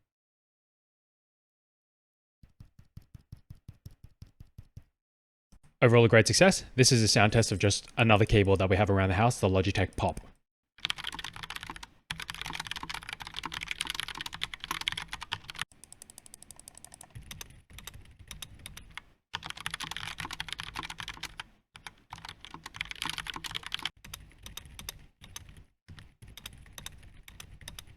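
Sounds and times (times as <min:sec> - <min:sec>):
fast keyboard typing: 0:07.8 - 0:08.7, 0:09.8 - 0:27.9.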